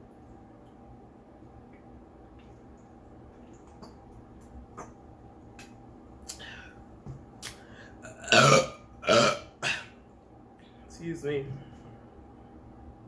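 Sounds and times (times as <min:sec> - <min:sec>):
eating noises: 0:01.7 - 0:06.5
loud burp: 0:08.0 - 0:09.9.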